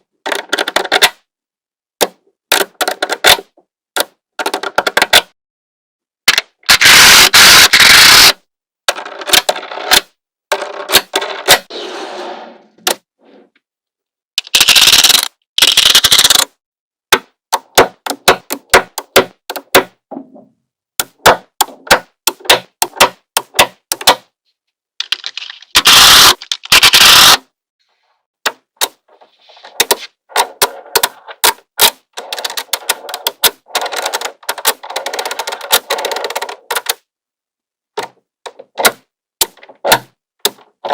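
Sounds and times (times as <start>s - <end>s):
magnetic balls clicking together: 14.4s - 16.5s.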